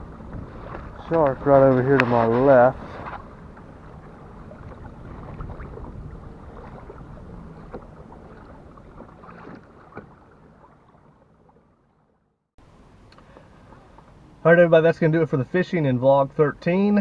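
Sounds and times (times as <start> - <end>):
wind on microphone: 0.0 - 10.7
water lapping against hull: 0.0 - 12.4, 13.2 - 14.4.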